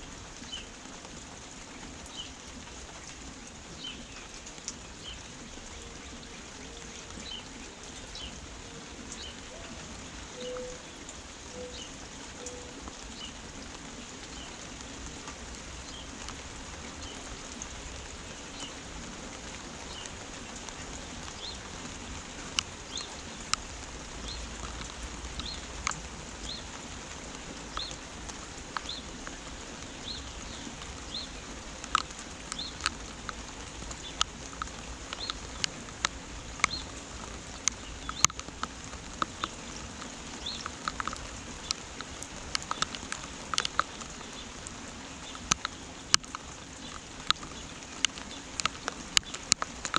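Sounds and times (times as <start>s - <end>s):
raindrops ticking on surface: 0.0s - 49.9s
steady rain: 0.0s - 49.9s
bird chirping: 10.4s - 10.9s.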